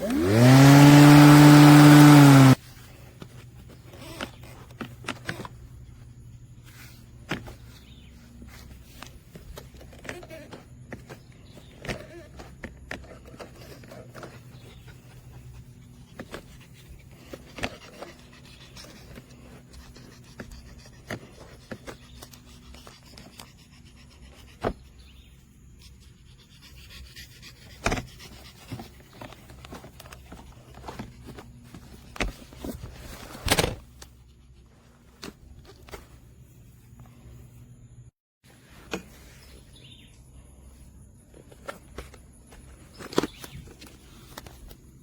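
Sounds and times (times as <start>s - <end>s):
electric lawn mower humming: 0.0s - 2.6s.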